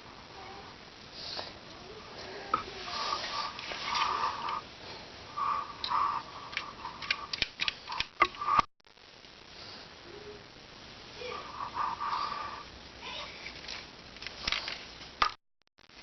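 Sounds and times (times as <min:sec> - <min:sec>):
sharp clicks: 0:05.8 - 0:08.7.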